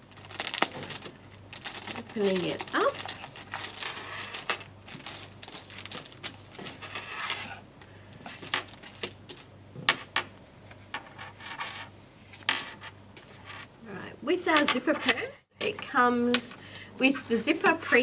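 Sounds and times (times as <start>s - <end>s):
packaging rustling: 0.0s - 7.7s, 8.3s - 9.5s.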